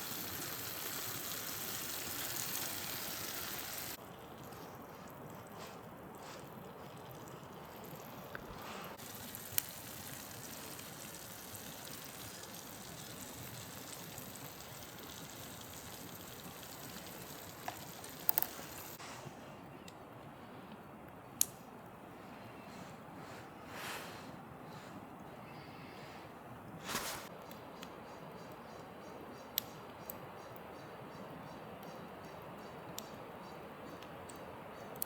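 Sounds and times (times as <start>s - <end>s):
campfire hissing: 0.0s - 19.1s
campfire pops: 8.3s - 11.0s, 15.8s - 19.0s.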